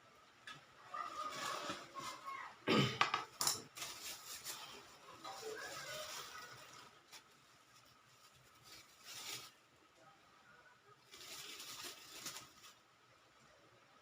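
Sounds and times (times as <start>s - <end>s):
faint rustling: 3.7s - 9.7s, 11.0s - 12.9s.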